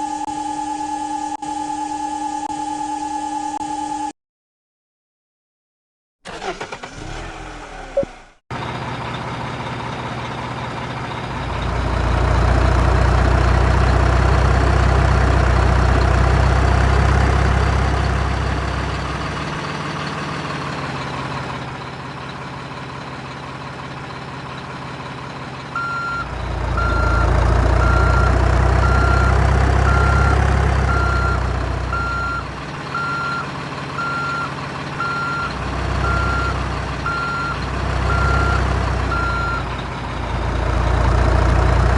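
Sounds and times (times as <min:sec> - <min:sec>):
diesel engine under load: 0:06.3 - 0:41.9
reversing alarm beeping: 0:25.8 - 0:40.5.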